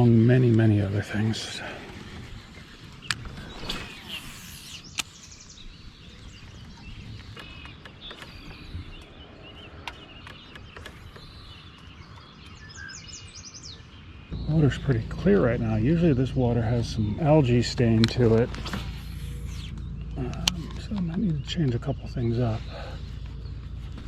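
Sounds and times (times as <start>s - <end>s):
birds chirping and calling: 0.0s - 24.0s
low outdoor hum: 0.0s - 24.0s.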